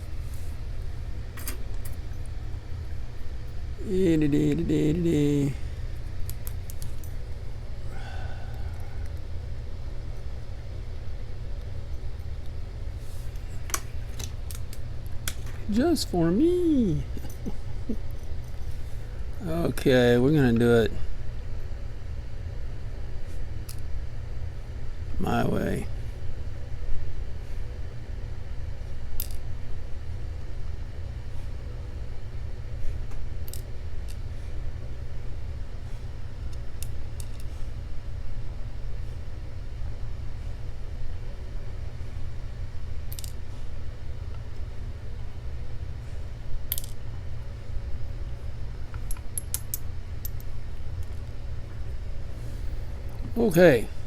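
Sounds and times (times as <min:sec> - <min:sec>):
steady low hum: 0:00.0 - 0:54.0
steady low rumble: 0:00.0 - 0:54.0
padlock parts and tools clicking: 0:01.4 - 0:02.3, 0:46.7 - 0:47.0, 0:49.0 - 0:51.2
small metal lock parts clinking: 0:01.4 - 0:02.3, 0:46.7 - 0:47.0.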